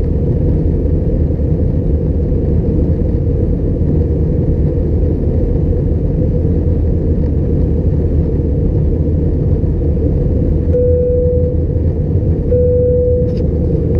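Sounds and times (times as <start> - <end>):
airplane cabin engine roar: 0.0 - 13.9
short steady tone: 10.7 - 11.6, 12.5 - 13.5.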